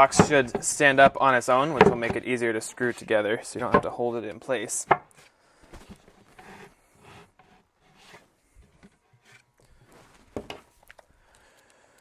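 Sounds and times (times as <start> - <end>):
small knocks: 0.0 - 2.3
panels rubbing and scraping: 0.0 - 10.7.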